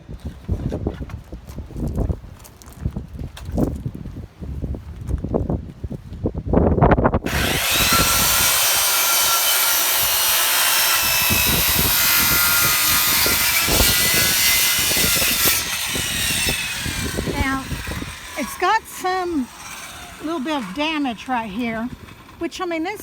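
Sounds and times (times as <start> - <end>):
low thumps of wind or handling: 0.0 - 23.0
power saw cutting wood: 7.3 - 23.0.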